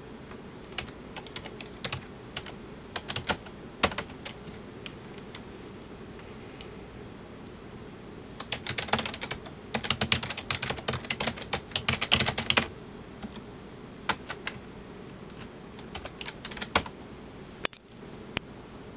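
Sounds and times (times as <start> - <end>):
keyboard typing: 0.7 - 5.4, 8.4 - 13.4, 14.1 - 14.6, 15.3 - 16.9.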